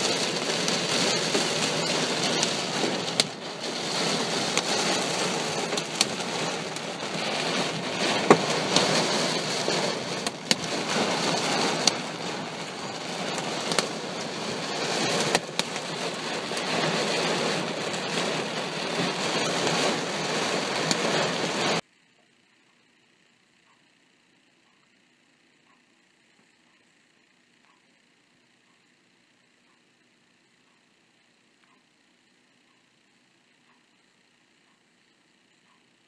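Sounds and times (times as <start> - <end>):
heavy rain pouring: 0.0 - 21.8.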